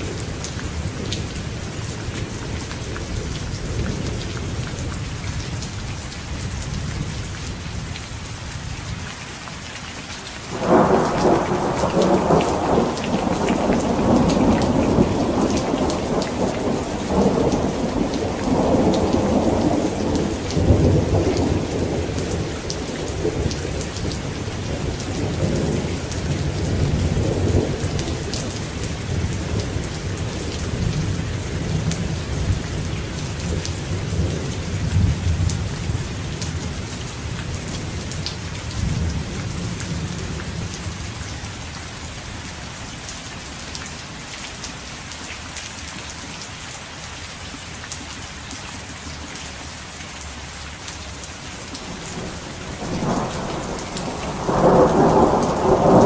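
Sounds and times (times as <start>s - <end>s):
rain drops ticking on a surface: 0.0s - 56.0s
rolling thunder: 10.5s - 36.7s, 51.8s - 56.0s.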